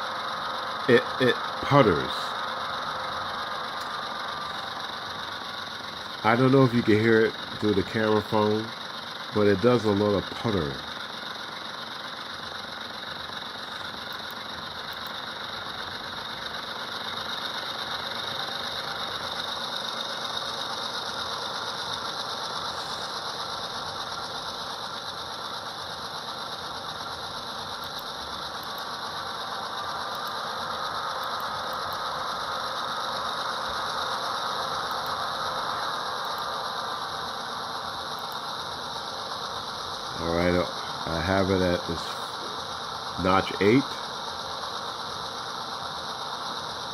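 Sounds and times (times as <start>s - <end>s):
diesel locomotive engine sound from small speaker: 0.0s - 46.9s.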